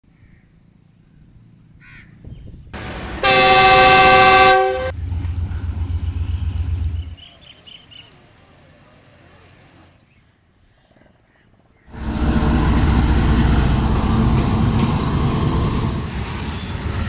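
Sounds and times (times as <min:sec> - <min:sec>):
locomotive horn blast: 0:02.8 - 0:05.1, 0:11.9 - 0:16.0
diesel engine rumble: 0:02.8 - 0:07.3, 0:11.9 - 0:17.0.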